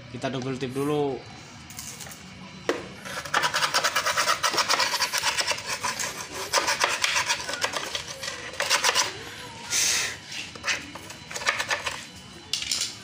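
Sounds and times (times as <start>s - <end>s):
scratchy rubbing on plastic: 3.0s - 9.1s.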